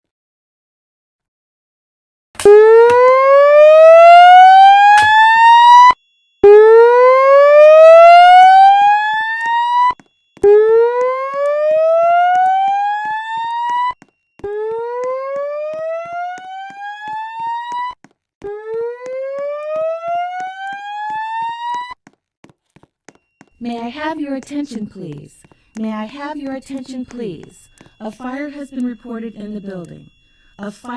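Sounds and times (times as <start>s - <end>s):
fire alarm whoop tone: 2.4s - 22.0s.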